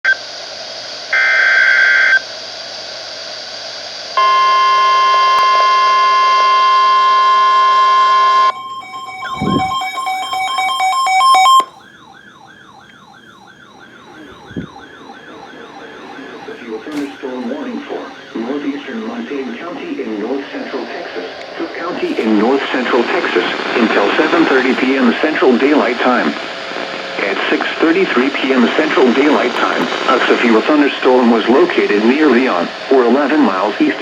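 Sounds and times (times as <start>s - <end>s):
radio hiss: 0.1s - 8.5s, 9.1s - 10.6s, 13.8s - 34.0s
data tones burst: 4.2s - 11.8s, 13.8s - 34.0s
warbling siren-like alarm: 4.2s - 21.5s
steady warning alarm tone: 4.2s - 34.0s.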